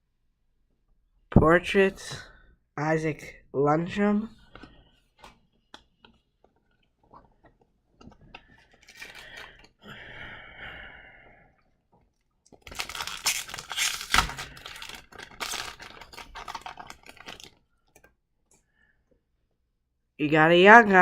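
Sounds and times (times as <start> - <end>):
cards being handled: 4.4 - 9.7, 12.5 - 18.1
foil wrapper crinkling and tearing: 8.6 - 9.7, 12.5 - 18.0.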